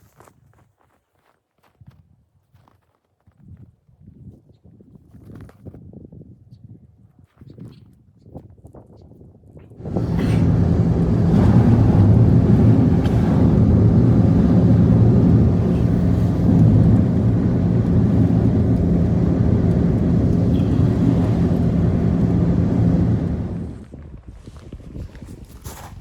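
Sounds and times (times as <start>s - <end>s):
engine running steadily: 9.8s - 23.9s.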